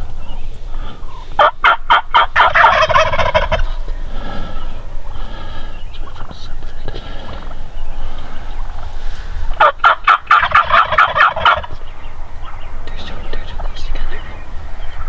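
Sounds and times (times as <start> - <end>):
turkey gobbling: 1.1 - 5.2, 9.5 - 12.7.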